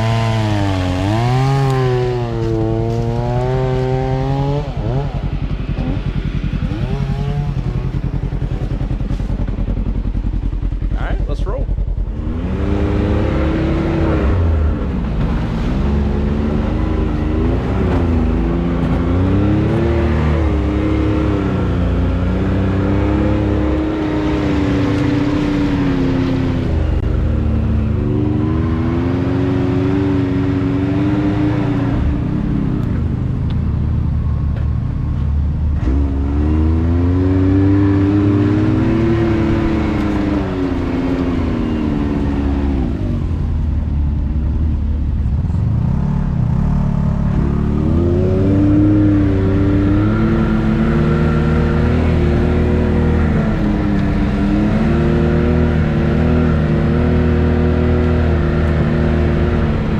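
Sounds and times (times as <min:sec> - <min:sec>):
utility vehicle engine revving: 0:00.0 - 0:11.1, 0:11.8 - 0:59.9
low rumble: 0:02.4 - 0:22.5.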